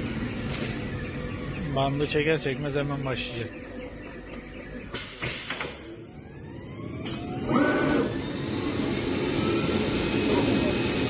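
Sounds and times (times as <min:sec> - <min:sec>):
motor whine rising: 0:00.0 - 0:11.0
loud steady rushing noise: 0:07.4 - 0:11.0.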